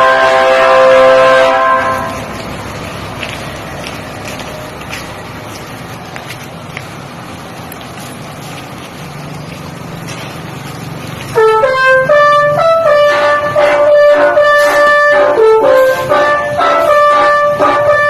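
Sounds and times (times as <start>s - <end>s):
multi-tone air horn melody: 0.0s - 2.3s, 11.3s - 18.0s
low vehicle rumble: 0.0s - 18.0s.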